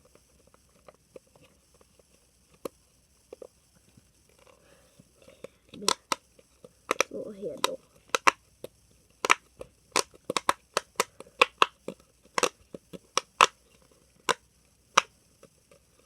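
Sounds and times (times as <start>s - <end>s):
plastic fidget toy clicking: 5.4s - 15.9s.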